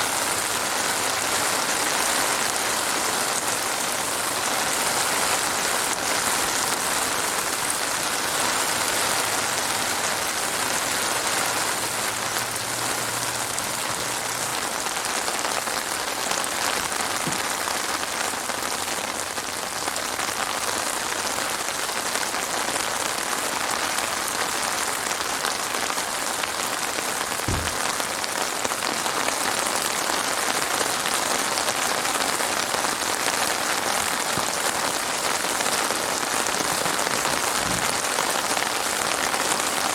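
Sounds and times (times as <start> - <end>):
heavy rain falling: 0.0 - 39.9
soft low thud: 27.5 - 28.0.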